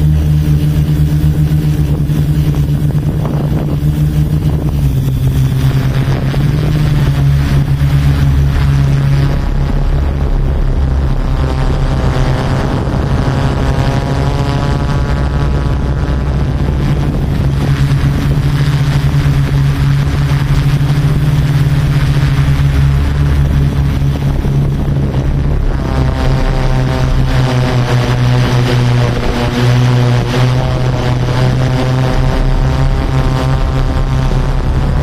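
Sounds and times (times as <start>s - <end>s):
drone motors buzzing: 0.0s - 35.0s.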